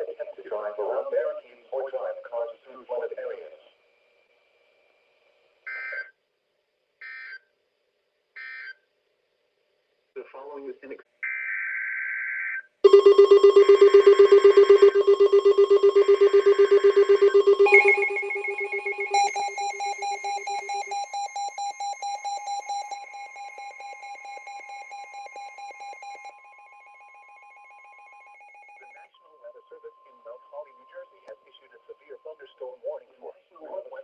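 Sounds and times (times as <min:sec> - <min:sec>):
pulsing electronic alert tone: 0:12.8 - 0:29.1
steady alert tones: 0:12.8 - 0:29.1
data burst: 0:12.9 - 0:29.9.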